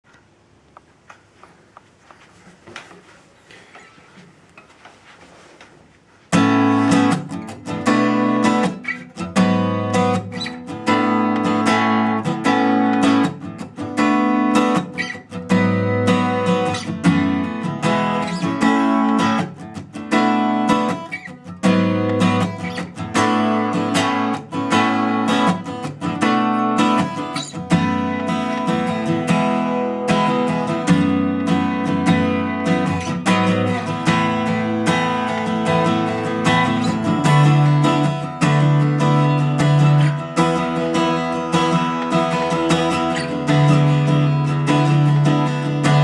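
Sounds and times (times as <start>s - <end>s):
acoustic guitar strummed: 6.3s - 46.0s.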